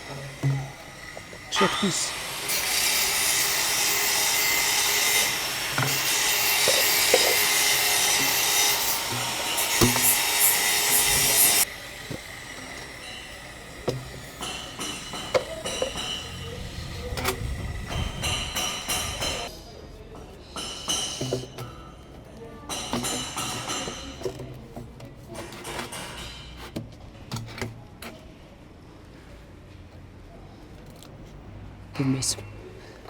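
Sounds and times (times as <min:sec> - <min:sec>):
saw cutting plastic pipe: 0:00.0 - 0:16.3
knocks and handling of pipe: 0:00.1 - 0:01.4, 0:05.7 - 0:10.6, 0:13.8 - 0:16.3, 0:20.6 - 0:27.8.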